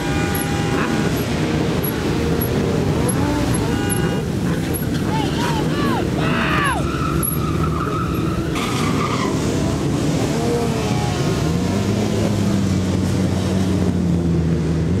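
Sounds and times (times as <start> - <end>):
loud vehicle engines: 0.0 - 15.0
tire squeal and skidding: 3.0 - 9.9.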